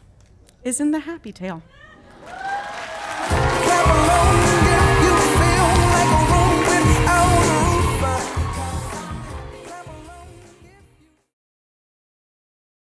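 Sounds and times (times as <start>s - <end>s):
pop song with vocals: 3.2s - 11.2s.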